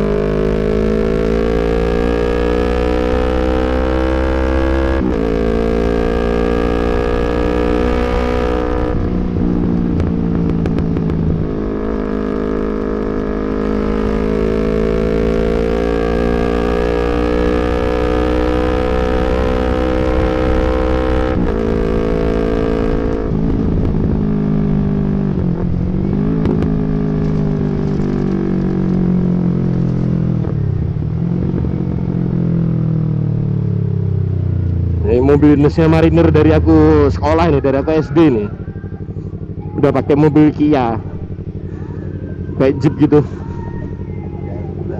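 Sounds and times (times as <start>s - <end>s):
motorcycle engine running: 0.0s - 44.9s.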